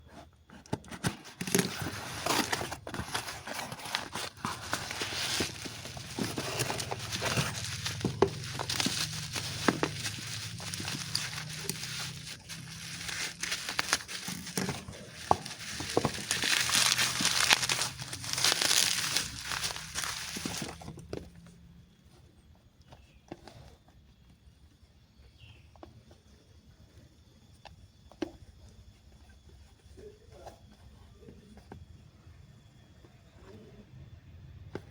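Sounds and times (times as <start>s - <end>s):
packaging rustling and crinkling: 0.7s - 21.3s.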